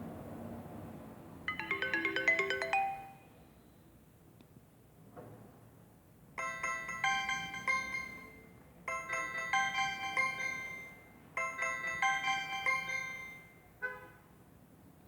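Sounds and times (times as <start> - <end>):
phone ringtone melody: 1.5 - 3.3, 6.4 - 13.6.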